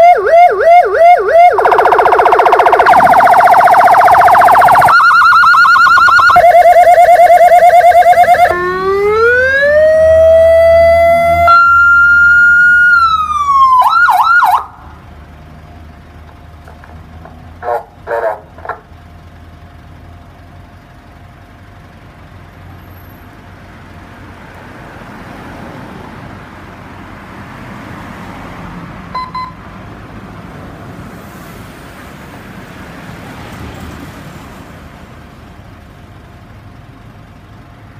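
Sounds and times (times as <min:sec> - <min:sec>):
vehicle engine and traffic: 0:00.0 - 0:37.9
short electronic beeps: 0:29.2 - 0:29.6.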